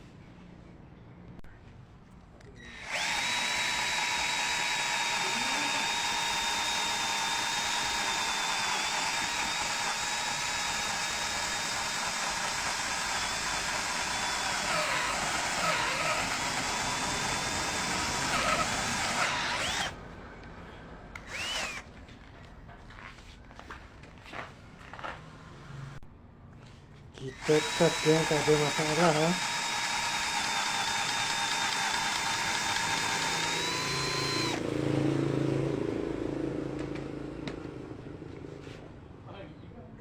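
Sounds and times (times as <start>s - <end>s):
cordless drill whining: 2.6s - 20.0s, 21.2s - 21.9s, 27.2s - 34.6s.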